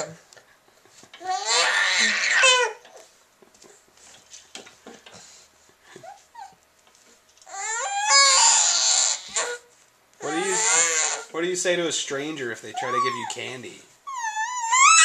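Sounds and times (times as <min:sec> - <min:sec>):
child wailing: 0:01.2 - 0:02.8, 0:07.5 - 0:09.6, 0:10.2 - 0:11.3, 0:14.2 - 0:15.0.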